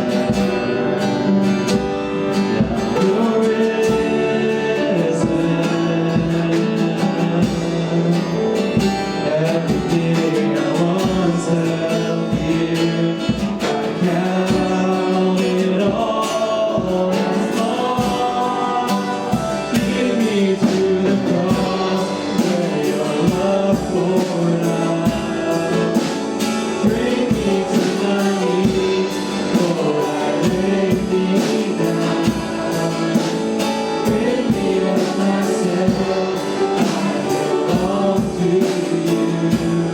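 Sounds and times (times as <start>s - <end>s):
people singing worship song: 0.0s - 39.9s
strummed guitar: 0.0s - 39.9s.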